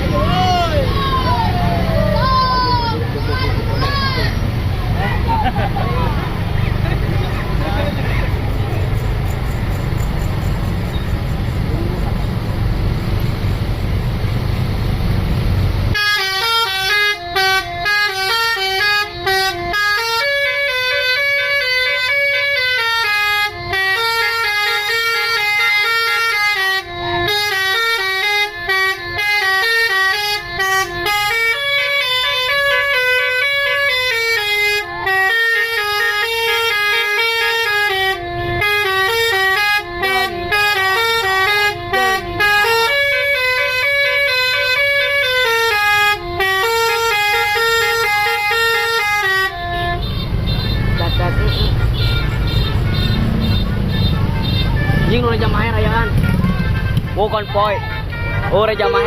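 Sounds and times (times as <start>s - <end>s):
bus horn playing a melody: 15.9s - 59.0s.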